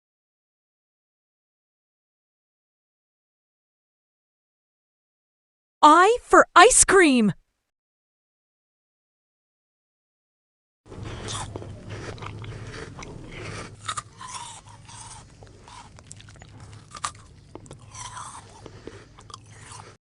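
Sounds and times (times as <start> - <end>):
person eating ice cream: 10.9 - 20.0
wet mouth sounds: 10.9 - 20.0.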